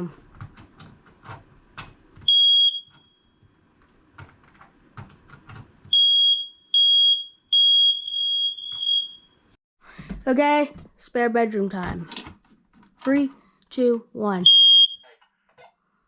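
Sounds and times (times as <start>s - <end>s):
smoke alarm beeping: 2.2s - 3.4s, 5.9s - 9.6s, 14.4s - 15.2s.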